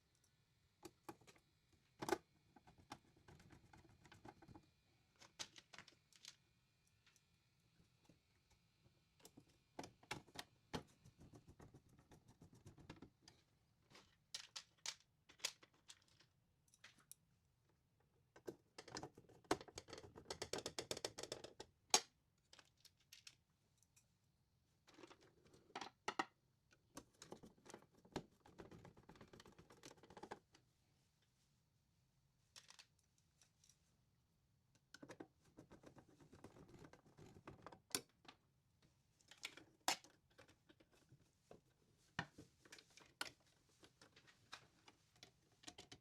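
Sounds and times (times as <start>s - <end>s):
clicks and taps of small parts: 2.0s - 4.6s, 14.3s - 17.2s, 18.3s - 24.1s.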